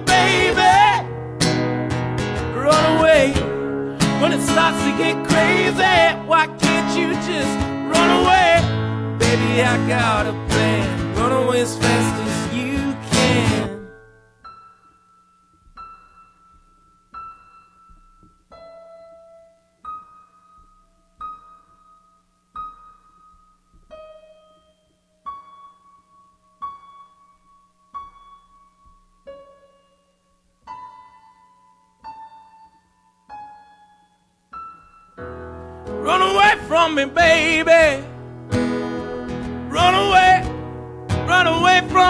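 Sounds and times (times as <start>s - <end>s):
quiet piano notes: 0.0s - 42.0s.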